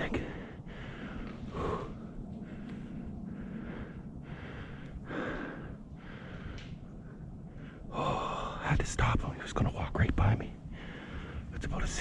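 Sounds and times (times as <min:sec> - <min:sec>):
man breathing hard: 0:00.0 - 0:08.6, 0:10.6 - 0:11.6.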